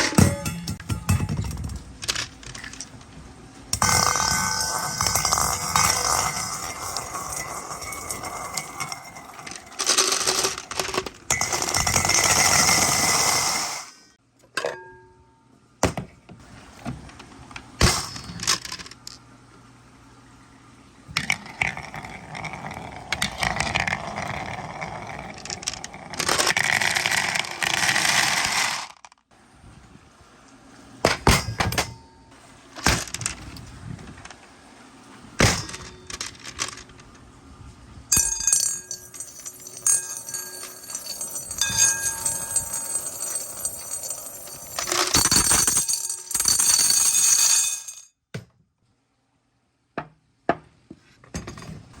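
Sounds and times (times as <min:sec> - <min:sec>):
marbles clicking and clinking: 0:03.8 - 0:14.0, 0:21.2 - 0:29.2, 0:38.1 - 0:48.0
marbles rolling on a track: 0:03.8 - 0:14.0, 0:21.2 - 0:29.2, 0:35.7 - 0:37.2, 0:38.1 - 0:48.1.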